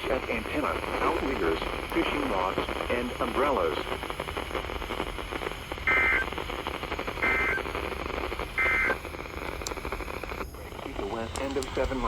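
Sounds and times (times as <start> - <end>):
radio hiss: 0.0 - 12.0
buzzy two-tone data bursts: 5.8 - 6.3, 7.0 - 9.1.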